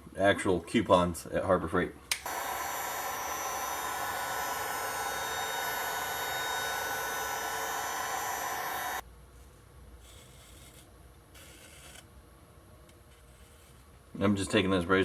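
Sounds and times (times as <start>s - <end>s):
heat gun blowing: 2.2s - 9.0s.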